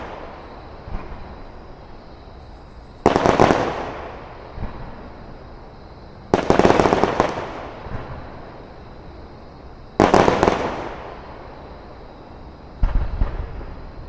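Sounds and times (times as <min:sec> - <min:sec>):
fireworks exploding: 0:00.0 - 0:01.6, 0:02.4 - 0:05.2, 0:06.3 - 0:08.6, 0:10.0 - 0:11.7, 0:12.8 - 0:14.0.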